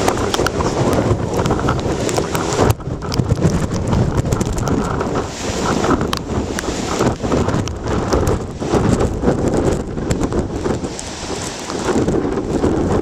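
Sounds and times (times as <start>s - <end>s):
wind blowing across microphone: 0.0s - 13.0s.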